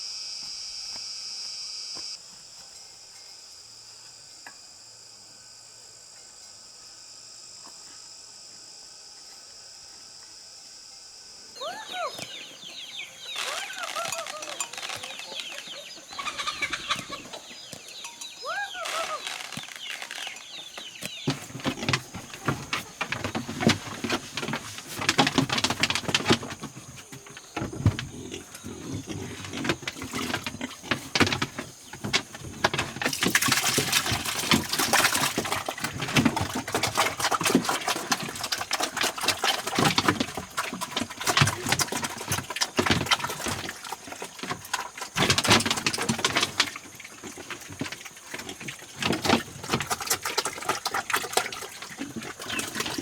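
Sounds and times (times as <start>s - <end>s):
pigs grunting: 13.3s - 17.6s, 21.3s - 53.0s.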